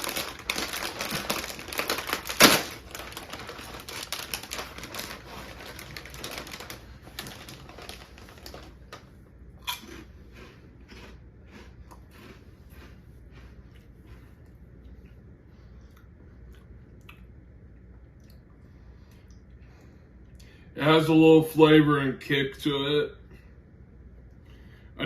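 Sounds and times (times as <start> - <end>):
puff snacks being crunched: 0.0 - 9.0, 9.6 - 13.0
plastic snack bag crinkling: 0.0 - 13.0.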